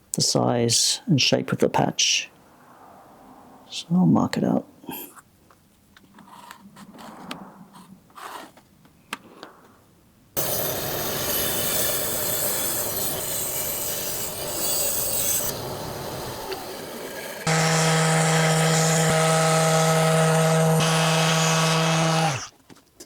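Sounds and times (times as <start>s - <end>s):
scratchy marking on wood: 7.7s - 8.6s
rasping wood: 10.4s - 15.7s, 16.5s - 22.5s.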